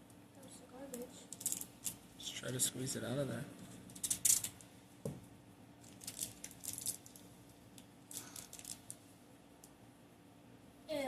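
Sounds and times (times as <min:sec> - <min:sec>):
crinkly rattly rustling: 0:00.8 - 0:02.0, 0:05.8 - 0:07.4, 0:08.1 - 0:09.0.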